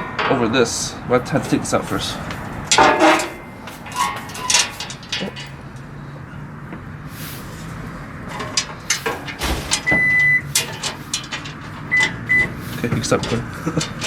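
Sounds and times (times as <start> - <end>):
metal plate knocking and clanking: 1.2 - 6.2, 8.2 - 14.0.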